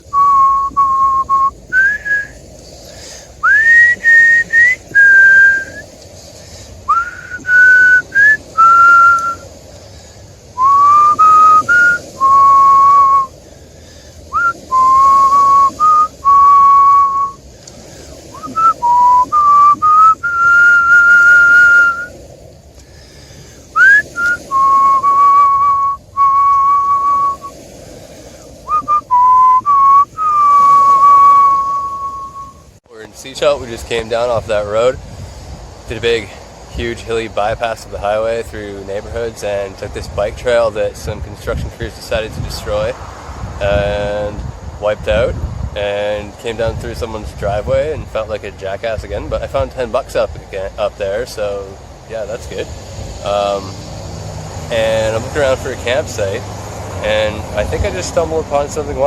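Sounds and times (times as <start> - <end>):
person whistling a tune: 0.1 - 2.4, 3.4 - 5.8, 6.9 - 9.4, 10.6 - 13.3, 14.3 - 17.4, 18.3 - 22.1, 23.8 - 27.5, 28.7 - 32.6.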